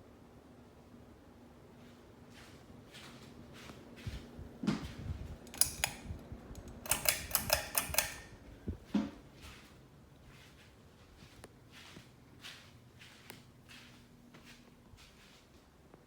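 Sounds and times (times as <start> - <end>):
fan motor hum: 0.0 - 16.0
fan switch clicking: 5.4 - 8.8
metal pull chain rattling: 5.5 - 6.0, 6.8 - 8.3.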